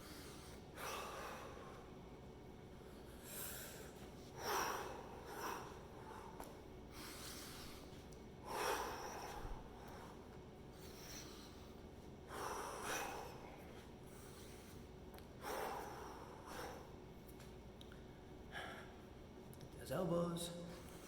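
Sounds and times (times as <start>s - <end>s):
person breathing deeply: 3.0s - 14.8s.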